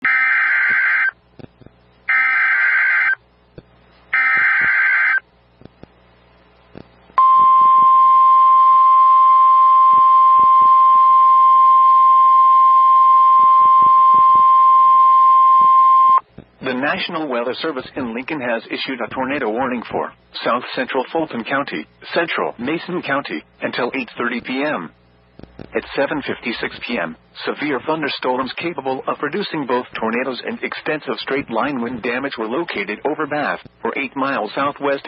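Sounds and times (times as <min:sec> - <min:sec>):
steady single-pitch alarm tone: 0:00.0 - 0:01.2, 0:02.1 - 0:03.2, 0:04.1 - 0:05.3, 0:07.2 - 0:16.2
warbling electronic data screeches: 0:00.0 - 0:01.2, 0:02.1 - 0:03.2, 0:04.2 - 0:05.2.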